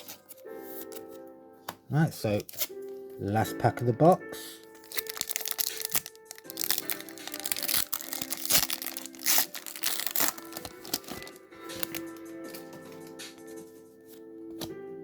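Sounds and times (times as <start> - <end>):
background music: 0.0 - 15.0
foil wrapper crinkling and tearing: 4.7 - 12.3.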